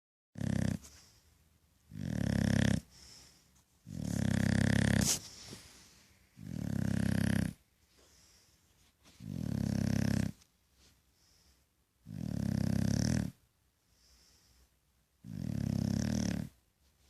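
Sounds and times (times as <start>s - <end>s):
dog snoring loudly: 0.4s - 0.9s, 1.9s - 3.1s, 3.8s - 5.2s, 6.4s - 7.6s, 9.2s - 10.4s, 12.0s - 13.4s, 15.2s - 16.6s
faint breaths: 2.8s - 4.2s, 5.0s - 6.4s, 7.8s - 9.3s, 10.3s - 11.9s, 13.8s - 14.9s.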